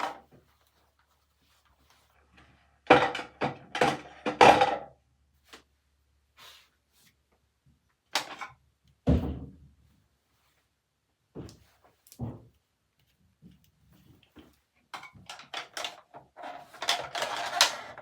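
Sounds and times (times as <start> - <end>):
knocks and thuds: 9.0 - 9.7.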